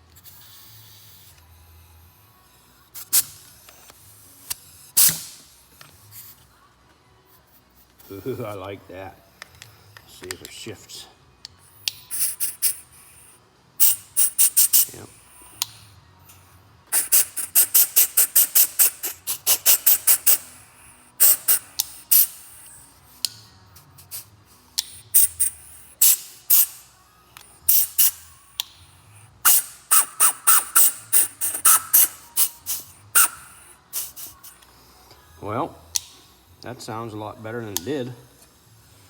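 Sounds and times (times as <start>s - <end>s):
puffs of hissing air: 2.9s - 6.2s, 11.8s - 16.0s, 16.9s - 35.0s.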